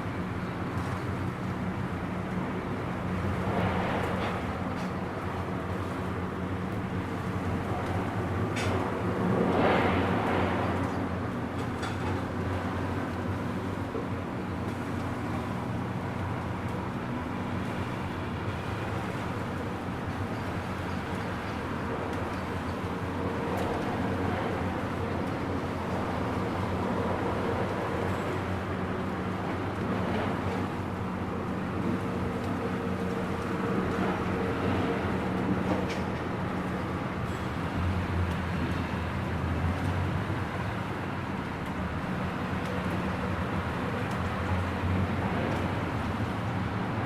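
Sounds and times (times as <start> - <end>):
steady rain: 0.0 - 47.0.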